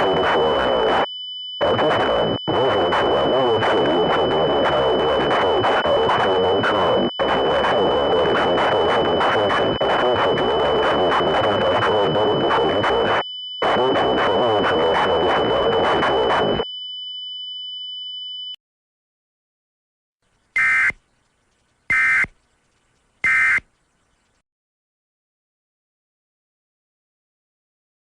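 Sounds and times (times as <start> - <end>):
warbling data bursts: 0.0 - 16.6.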